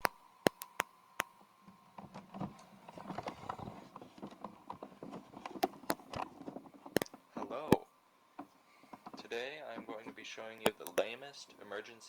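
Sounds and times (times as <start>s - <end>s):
sharp clicks: 0.0s - 1.3s, 7.0s - 7.8s
faint small clicks and rustling: 0.0s - 7.6s.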